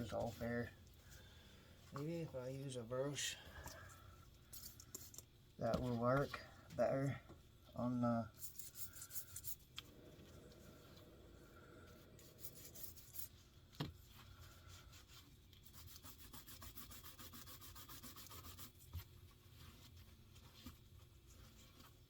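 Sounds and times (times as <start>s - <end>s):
brush scrubbing: 8.4s - 9.7s, 12.0s - 13.5s, 14.3s - 22.0s.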